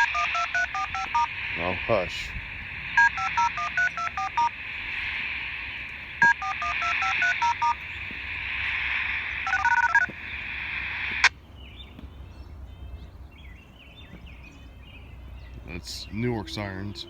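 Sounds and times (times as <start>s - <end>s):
two-tone touch-tone beeps: 0.0s - 1.4s, 3.0s - 4.6s, 6.2s - 7.8s, 9.4s - 10.1s
radio hiss: 0.0s - 11.4s
radio transmission click: 0.0s - 11.4s.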